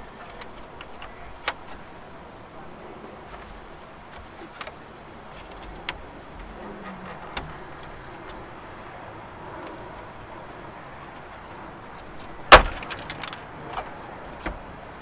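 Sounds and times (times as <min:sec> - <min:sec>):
steady background hum: 0:00.0 - 0:15.0
plastic clips snapping: 0:12.5 - 0:13.9.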